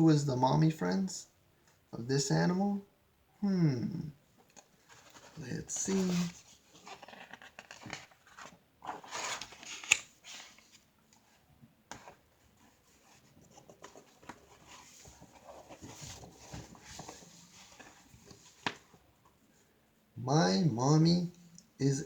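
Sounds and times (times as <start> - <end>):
book pages rustling: 4.4 - 19.4.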